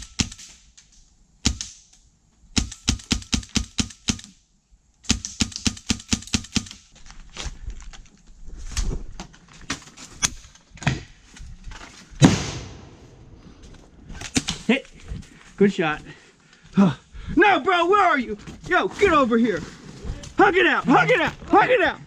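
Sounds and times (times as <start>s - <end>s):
airsoft guns firing: 0.0s - 0.7s, 1.4s - 1.8s, 2.6s - 4.4s, 5.0s - 6.9s, 12.2s - 13.4s.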